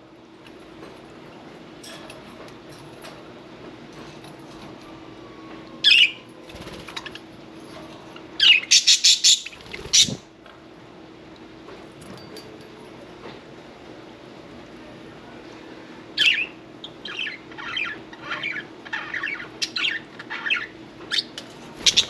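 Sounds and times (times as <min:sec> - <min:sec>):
bird flapping wings: 0:06.4 - 0:07.1, 0:09.5 - 0:10.2.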